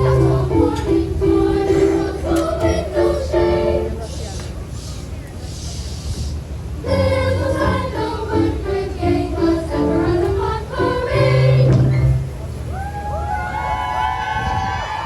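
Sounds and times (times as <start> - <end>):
youth choir singing: 0.0 - 4.1, 6.8 - 12.2.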